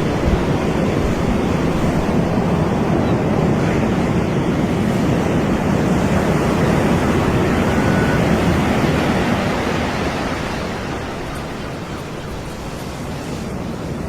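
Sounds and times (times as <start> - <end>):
waves breaking on beach: 0.0 - 14.0.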